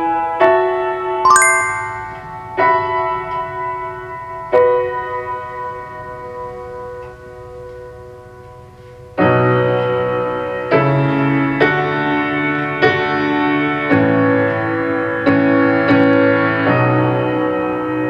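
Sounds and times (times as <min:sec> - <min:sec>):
piano-like keyboard music: 0:01.3 - 0:02.7.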